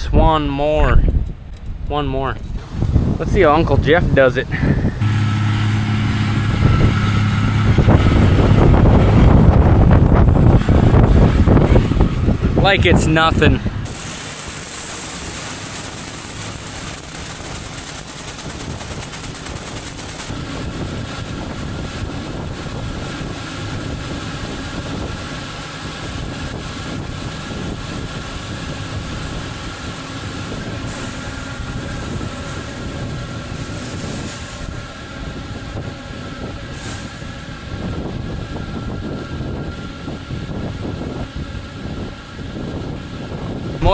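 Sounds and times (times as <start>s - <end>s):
mechanical whine: 1.0s - 43.9s
heavy farm machinery running: 2.5s - 43.9s
high hiss: 12.8s - 28.3s.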